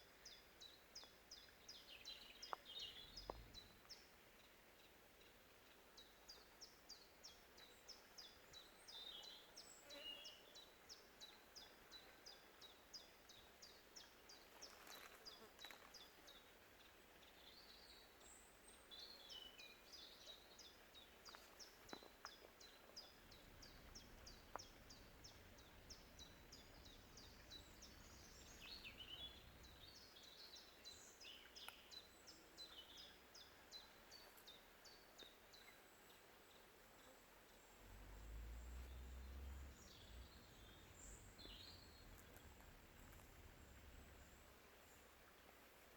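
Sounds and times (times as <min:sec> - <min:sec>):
warbling bird calls: 0:23.1 - 0:30.1.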